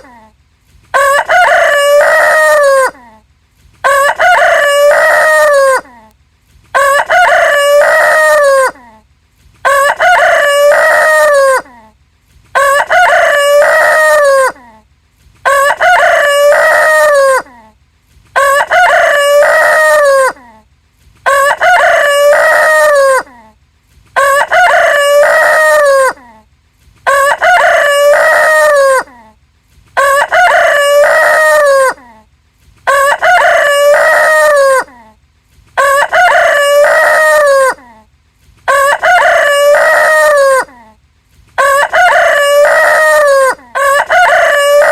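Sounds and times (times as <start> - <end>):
rooster crowing: 0.9 - 3.0, 3.8 - 5.9, 6.7 - 8.8, 9.6 - 11.8, 12.6 - 14.6, 15.4 - 17.5, 18.4 - 20.4, 21.2 - 23.4, 24.2 - 26.3, 27.0 - 29.2, 30.0 - 32.1, 32.9 - 35.0, 35.8 - 37.9, 38.7 - 40.8, 41.6 - 44.9.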